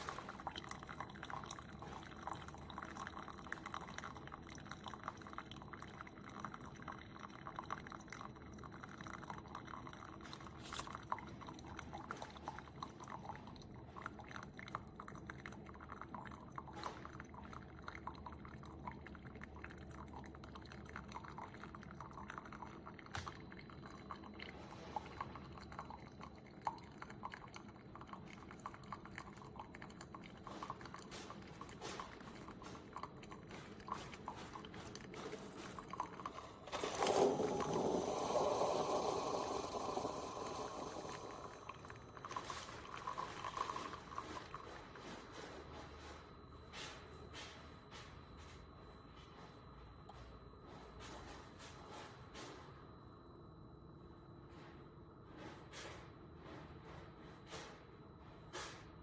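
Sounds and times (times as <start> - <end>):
coffee dripping into a mug: 0.0 - 45.6.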